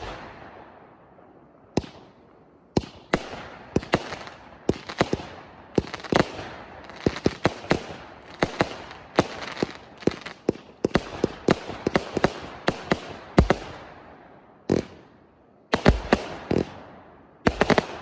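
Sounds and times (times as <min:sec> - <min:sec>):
firework bangs: 0:02.8 - 0:14.0, 0:14.7 - 0:15.0
firework crackling: 0:03.3 - 0:13.8.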